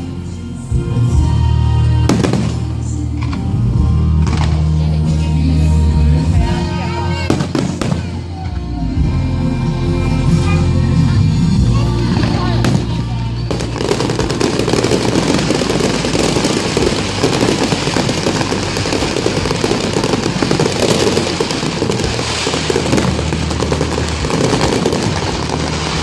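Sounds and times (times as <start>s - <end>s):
fireworks crackling and popping: 2.0s - 5.3s, 6.4s - 8.7s, 11.7s - 26.0s.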